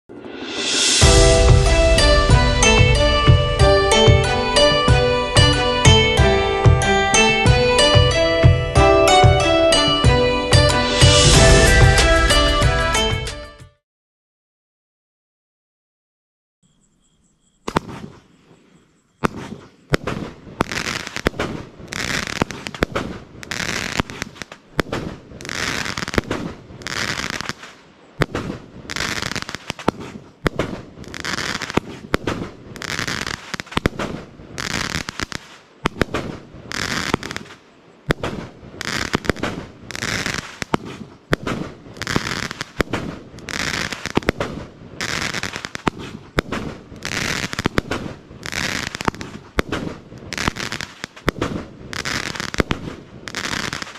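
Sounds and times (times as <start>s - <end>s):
firework launch reports: 0.1s - 5.6s
hissing crackle of bursting fireworks: 0.1s - 12.8s, 17.6s - 53.9s.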